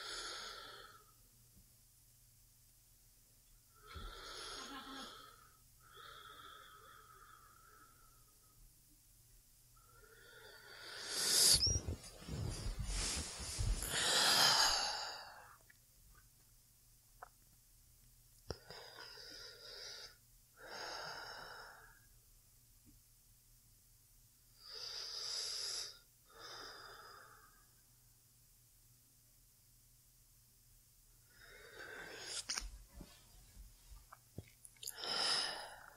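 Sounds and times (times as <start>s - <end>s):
woman breathing slowly: 3.7s - 8.7s, 9.8s - 15.6s, 18.6s - 22.1s, 24.6s - 27.8s, 31.3s - 33.4s, 34.9s - 35.9s.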